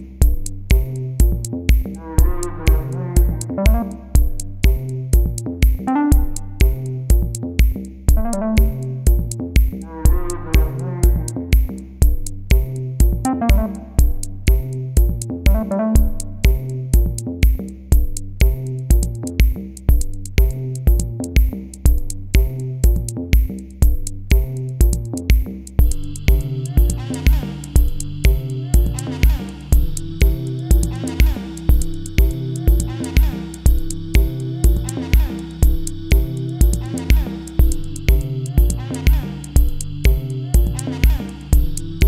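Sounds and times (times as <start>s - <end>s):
drum machine kick: 0.0s - 42.0s
synthesizer bass and chords: 0.0s - 42.0s
synthesizer melody: 2.1s - 4.2s, 5.9s - 6.6s, 8.2s - 9.0s, 13.2s - 14.2s, 15.5s - 16.4s.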